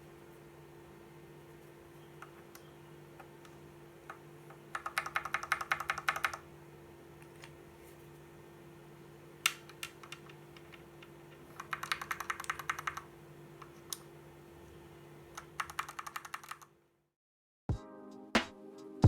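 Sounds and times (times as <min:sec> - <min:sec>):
faint steady hum: 0:00.0 - 0:17.1
typing on mechanical keyboard: 0:04.1 - 0:06.4, 0:09.5 - 0:13.1, 0:15.3 - 0:16.7.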